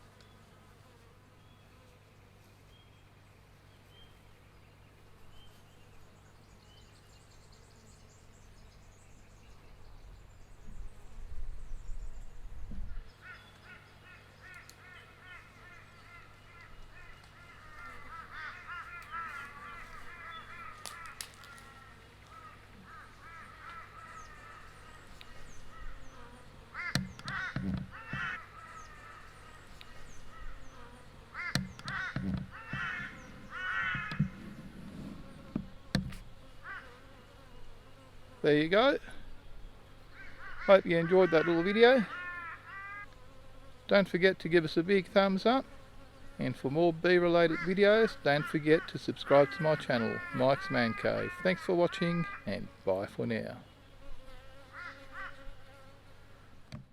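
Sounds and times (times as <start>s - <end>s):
honeybee colony buzzing: 0.0s - 2.8s, 13.1s - 56.9s
harsh caw-like bird calls: 13.2s - 34.6s, 36.6s - 37.1s, 40.1s - 43.1s, 47.4s - 52.6s, 54.6s - 55.5s.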